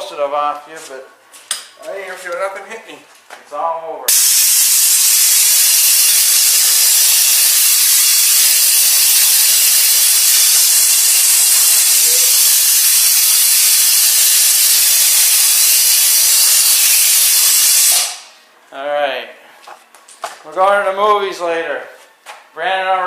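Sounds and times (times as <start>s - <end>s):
air blow gun hissing: 4.1s - 18.4s.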